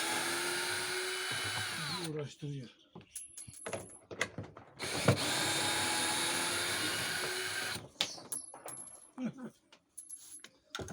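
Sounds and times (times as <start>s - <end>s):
power drill running: 0.0s - 2.1s, 4.8s - 7.8s.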